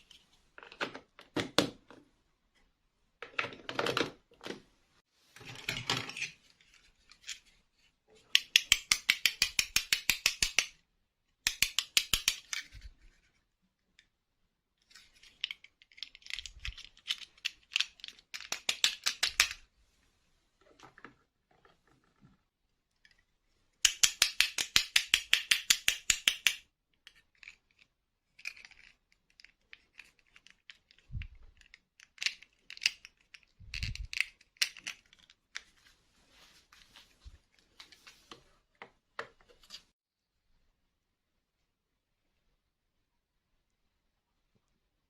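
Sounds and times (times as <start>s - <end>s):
plastic toy pieces clicking: 8.3s - 10.8s, 11.4s - 12.8s, 15.3s - 19.6s, 23.8s - 35.4s.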